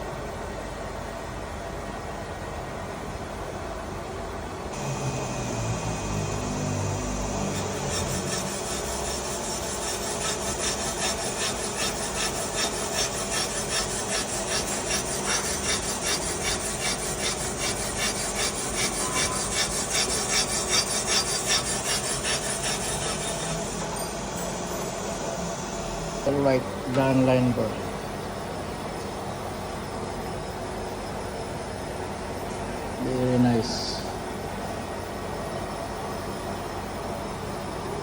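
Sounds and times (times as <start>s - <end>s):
low machine hum: 0.0s - 38.0s
metallic scraping of boring bar: 6.1s - 24.2s.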